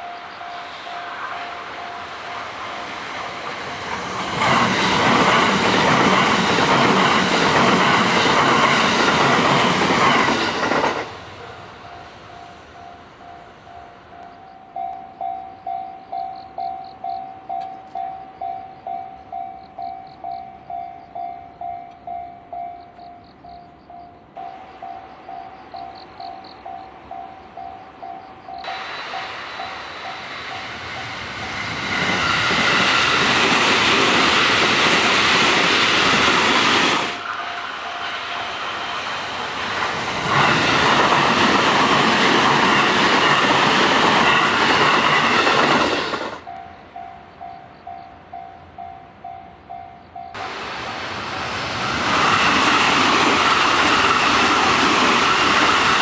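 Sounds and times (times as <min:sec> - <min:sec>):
level crossing warning bell: 0:00.0 - 0:03.0, 0:11.3 - 0:31.5, 0:32.5 - 0:39.0, 0:39.8 - 0:50.5
trains passing on rails: 0:00.0 - 0:56.0.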